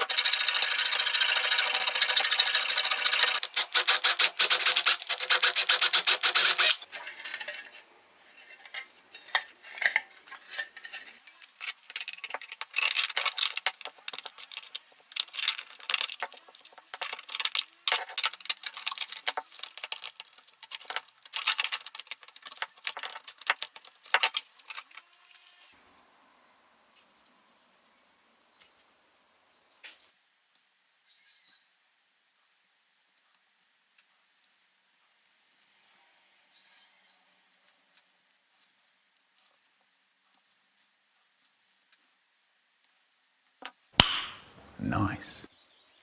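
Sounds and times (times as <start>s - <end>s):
metal parts clicking and scraping: 0.0s - 25.7s.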